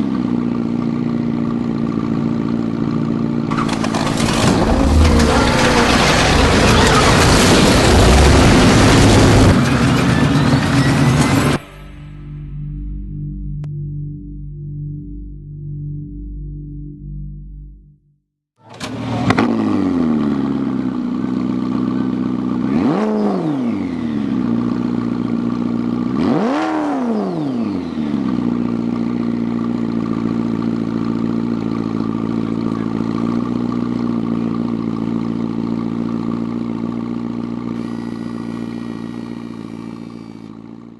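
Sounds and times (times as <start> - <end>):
engine idling: 0.0 - 12.5, 18.6 - 22.7, 27.7 - 40.9
engine starting and revving: 3.5 - 11.6, 18.6 - 20.4.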